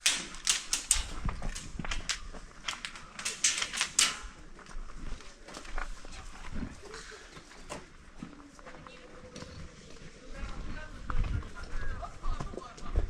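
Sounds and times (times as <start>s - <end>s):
airsoft gunfire clicks: 0.0s - 4.4s.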